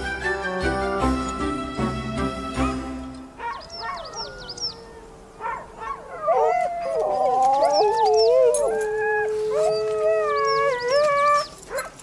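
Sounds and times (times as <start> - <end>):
huskies howling and yelping: 3.4 - 12.0.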